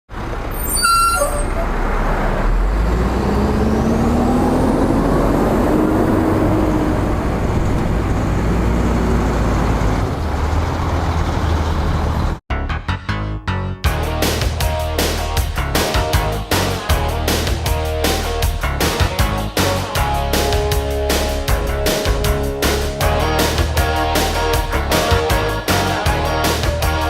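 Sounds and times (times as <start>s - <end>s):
high squeal: 0.5s - 1.8s
large engine running under load: 1.6s - 12.4s.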